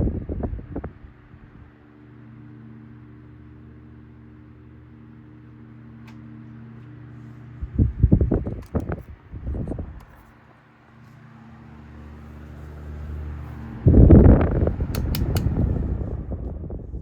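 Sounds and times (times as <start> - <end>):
fan motor humming: 0.0 - 17.0
sharp clicks: 14.9 - 15.6.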